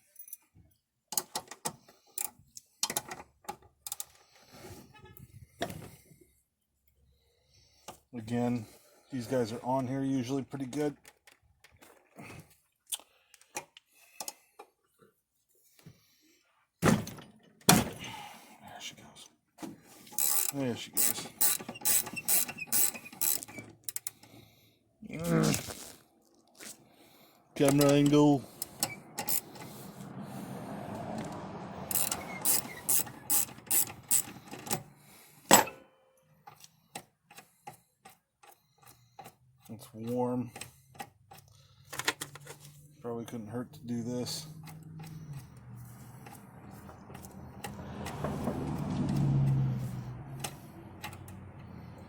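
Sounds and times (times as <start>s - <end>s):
wrench clicking and tapping metal: 20.2s - 24.2s, 31.9s - 34.8s.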